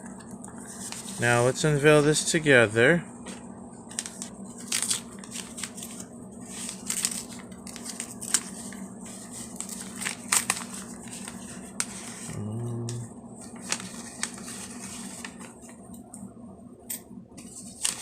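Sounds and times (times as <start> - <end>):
packaging crinkling and rustling: 3.9 - 12.3, 13.5 - 15.7.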